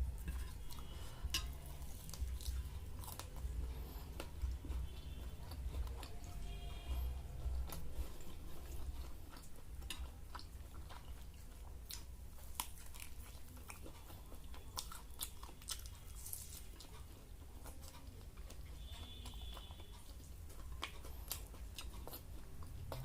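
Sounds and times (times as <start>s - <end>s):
person chewing crunchy food: 0.0s - 23.0s.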